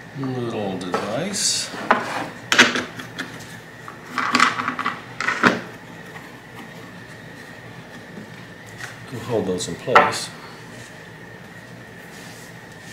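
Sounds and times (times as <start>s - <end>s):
wood pieces scraping knocks: 4.0s - 6.7s.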